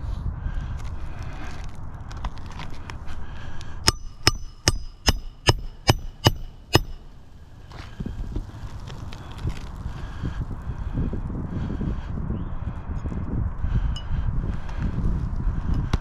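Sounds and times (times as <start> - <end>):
hammer striking nail: 3.9 - 7.0.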